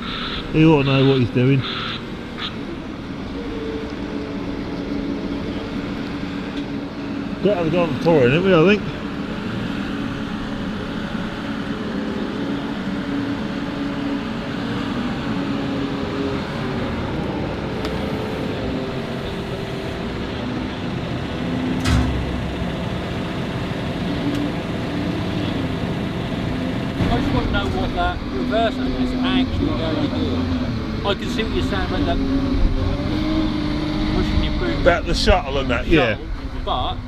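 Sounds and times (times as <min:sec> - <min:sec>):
diesel engine running: 0:00.0 - 0:37.0
thump: 0:21.8 - 0:23.6.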